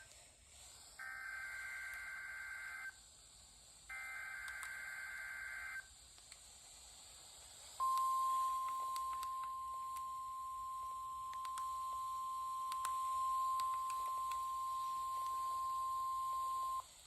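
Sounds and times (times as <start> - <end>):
steady warning alarm tone: 7.8 - 16.8.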